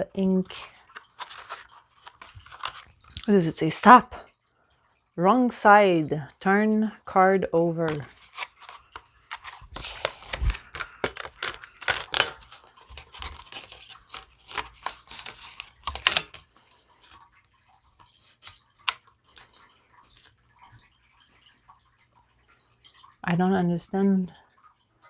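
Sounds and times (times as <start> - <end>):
packaging rustling and crinkling: 0.5 - 3.3, 7.9 - 17.2.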